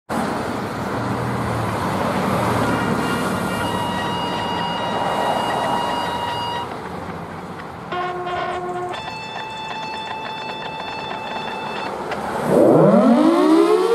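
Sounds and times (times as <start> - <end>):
road traffic hiss: 0.1 - 13.9
loud steady pitched tone: 2.6 - 6.8, 7.9 - 13.9
faint steady tone: 2.7 - 6.7.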